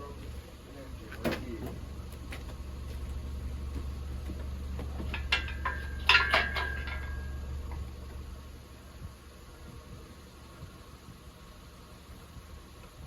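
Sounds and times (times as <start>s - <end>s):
steady low hum: 0.0s - 13.0s
metal parts clanking: 4.9s - 7.8s
metallic ring: 5.0s - 7.8s.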